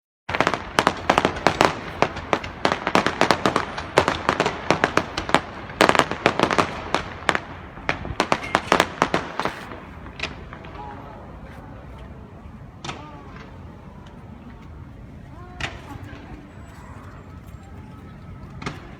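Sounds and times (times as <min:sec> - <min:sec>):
fireworks bangs and cracks: 0:00.3 - 0:11.8, 0:12.7 - 0:14.2.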